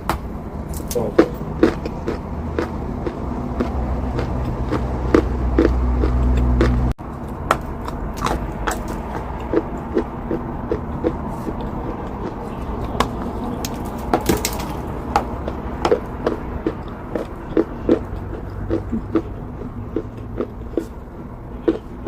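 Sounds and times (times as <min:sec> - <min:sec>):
chalk crunching in mouth: 0:15.9 - 0:22.0.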